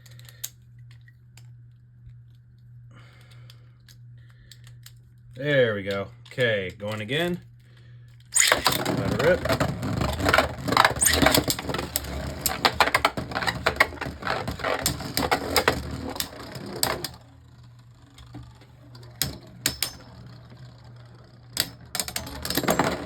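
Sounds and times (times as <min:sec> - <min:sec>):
spinning tops clattering: 0:08.4 - 0:23.0.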